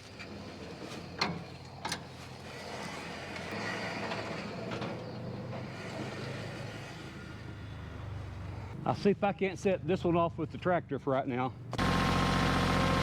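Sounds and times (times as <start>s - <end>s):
engine running: 11.5s - 13.0s.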